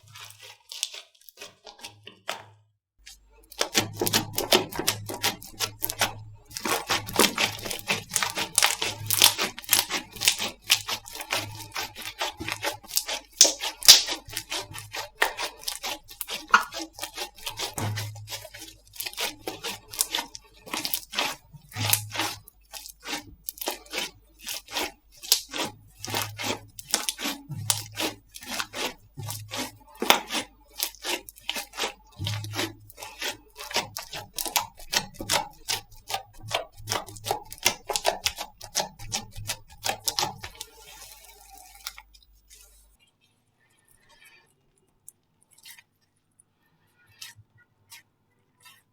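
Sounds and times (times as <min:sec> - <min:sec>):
slime sticky pops: 0:13.4 - 0:14.5.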